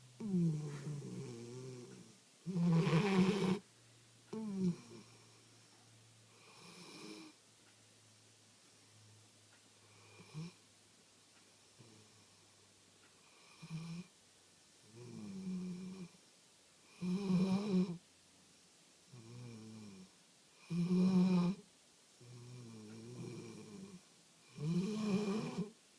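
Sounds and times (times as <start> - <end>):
puppy snoring: 0.2 - 3.6, 4.3 - 5.7, 6.3 - 7.4, 9.8 - 10.6, 13.2 - 14.1, 14.8 - 16.2, 16.9 - 18.0, 19.1 - 21.6, 22.2 - 25.8.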